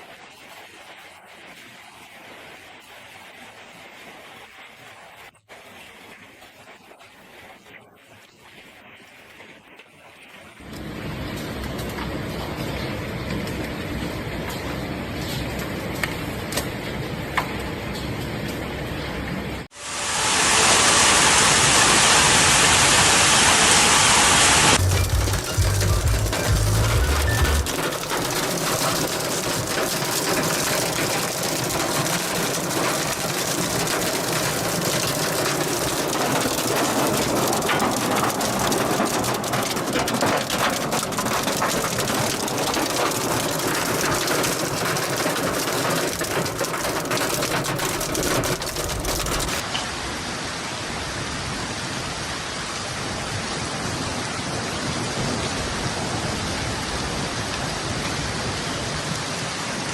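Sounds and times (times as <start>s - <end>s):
heavy rain roaring: 10.6s - 16.4s, 18.7s - 59.9s
hailstones clattering: 24.8s - 49.6s.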